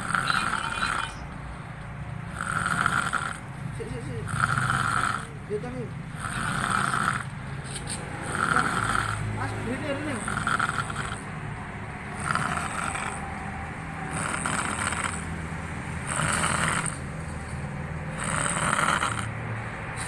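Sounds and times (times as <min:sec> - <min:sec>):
person snoring raspingly: 0:00.0 - 0:01.2, 0:02.3 - 0:03.6, 0:04.2 - 0:05.5, 0:06.1 - 0:07.3, 0:08.2 - 0:09.4, 0:10.0 - 0:11.3, 0:12.1 - 0:13.3, 0:14.1 - 0:15.4, 0:16.0 - 0:17.1, 0:18.1 - 0:19.4.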